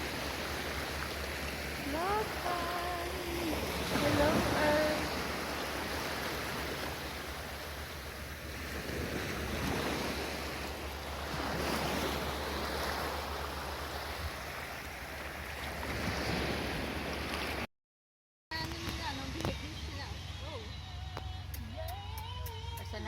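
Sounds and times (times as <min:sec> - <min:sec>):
sea waves washing onto beach: 0:00.0 - 0:17.7.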